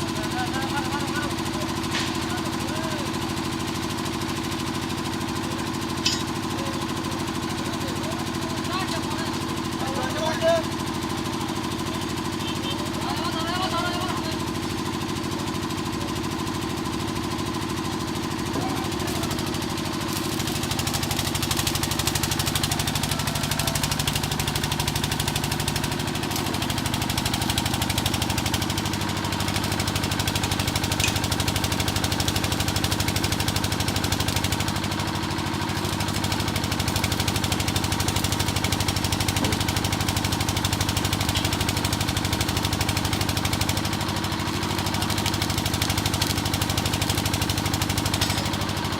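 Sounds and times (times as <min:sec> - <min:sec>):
engine running steadily: 0:00.0 - 0:48.9.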